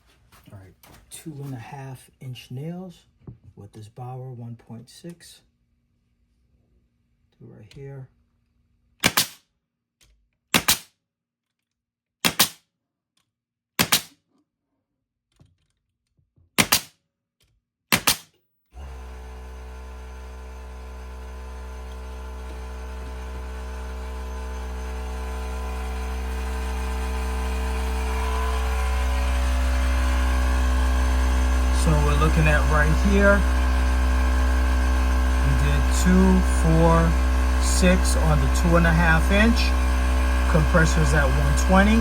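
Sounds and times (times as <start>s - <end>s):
nail gun firing: 9.0s - 9.4s, 10.5s - 10.9s, 12.2s - 12.6s, 13.8s - 14.2s, 16.6s - 17.0s, 17.9s - 18.4s
air compressor running: 18.8s - 42.0s.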